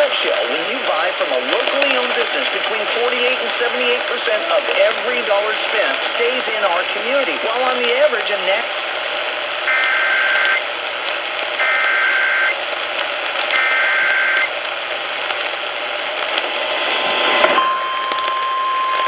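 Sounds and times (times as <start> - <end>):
radio static: 0.0 - 19.0
steady attention tone: 8.4 - 12.6, 13.6 - 19.0
two-tone data signal bursts: 9.0 - 10.8, 11.6 - 12.6, 13.5 - 14.5, 16.9 - 19.0.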